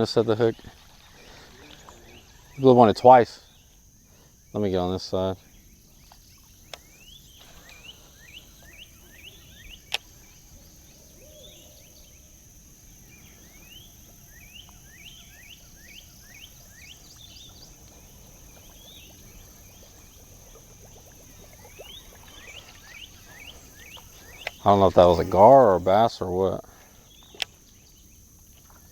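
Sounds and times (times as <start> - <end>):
high-pitched insect drone: 21.3 - 26.7
bird whistling song: 21.4 - 26.2.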